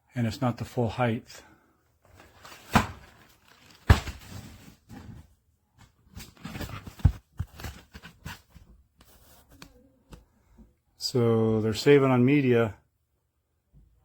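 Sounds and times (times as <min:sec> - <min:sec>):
cardboard rustling: 0:02.0 - 0:09.9.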